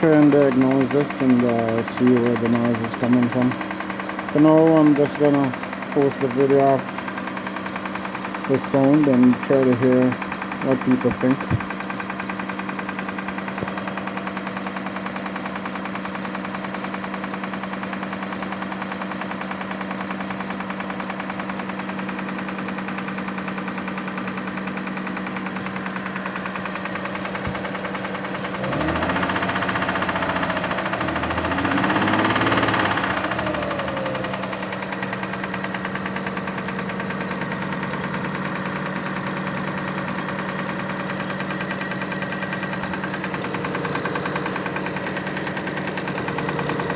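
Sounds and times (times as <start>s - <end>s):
engine idling with rhythmic knock: 0.0s - 46.9s
engine revving: 26.9s - 46.9s.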